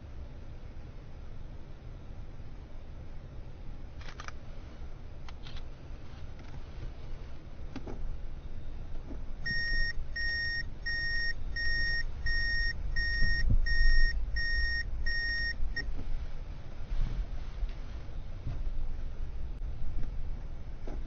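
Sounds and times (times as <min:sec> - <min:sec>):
car idling rumble: 0:00.0 - 0:21.0
reverse warning beeps: 0:09.4 - 0:15.9.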